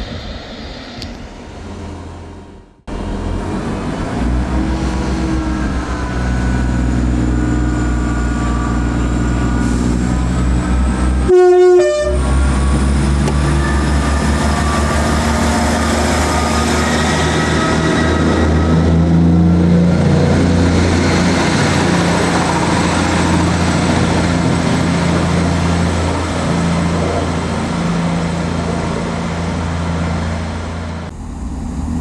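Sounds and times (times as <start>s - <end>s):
train engine rumble: 0.0s - 32.0s
train horn blast: 11.2s - 19.0s.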